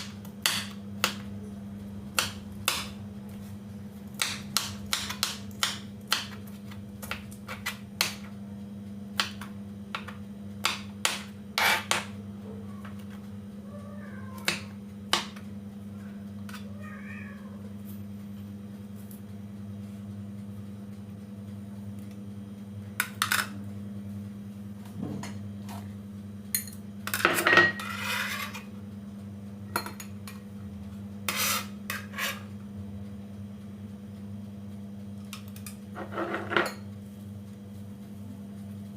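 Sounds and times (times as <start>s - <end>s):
steady low hum: 0.0s - 38.9s
utensils and dishes clattering: 26.6s - 28.7s, 35.6s - 36.8s.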